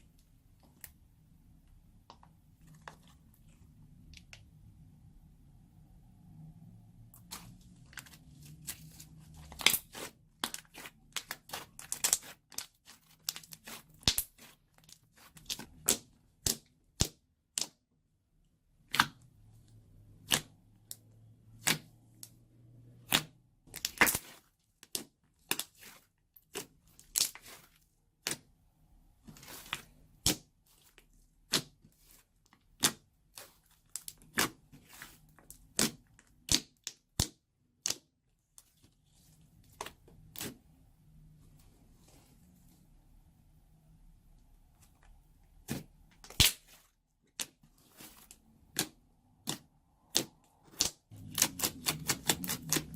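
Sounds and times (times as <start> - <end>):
slime popping and crackling: 7.2 - 17.8, 23.0 - 27.6, 45.7 - 47.6, 48.7 - 52.9.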